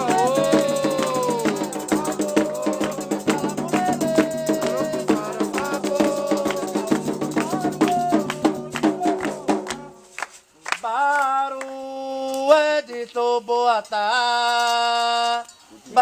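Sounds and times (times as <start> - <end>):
drums beating steady rhythm: 0.0 - 11.2
person singing a chant: 0.0 - 16.0.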